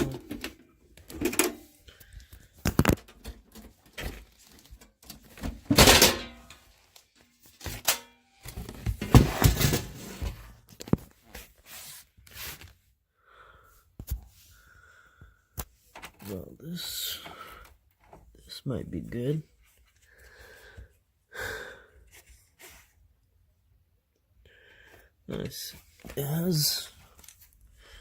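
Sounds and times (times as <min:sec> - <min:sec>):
scraping on computer case: 0:07.6 - 0:10.6.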